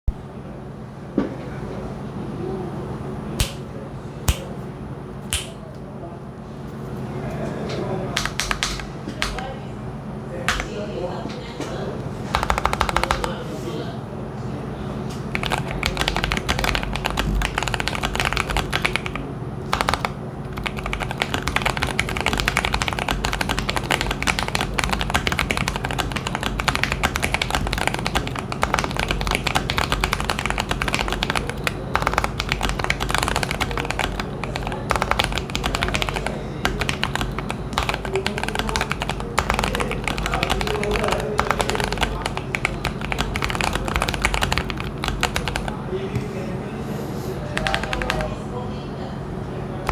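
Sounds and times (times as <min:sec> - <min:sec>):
typing on mechanical keyboard: 0:08.2 - 0:09.5, 0:10.5 - 0:10.7, 0:12.3 - 0:13.4, 0:15.3 - 0:45.8, 0:47.5 - 0:48.4.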